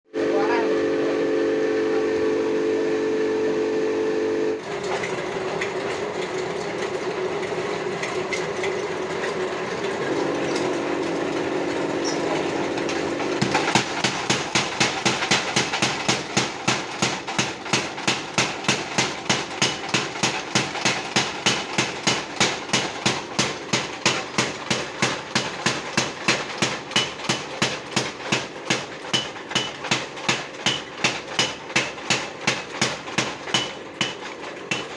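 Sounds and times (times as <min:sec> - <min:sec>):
power hammer machine humming: 0:00.1 - 0:34.9
power hammer ram striking: 0:13.2 - 0:34.9.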